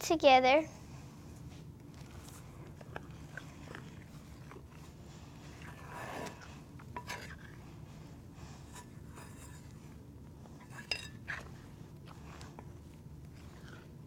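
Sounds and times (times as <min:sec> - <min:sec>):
spoon stirring thick mixture: 0:01.9 - 0:14.0
spoon clinking and scraping dish: 0:10.7 - 0:11.4.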